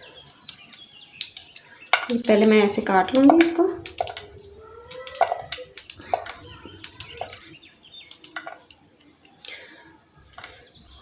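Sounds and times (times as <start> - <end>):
faint bird chirps: 3.8 - 11.0.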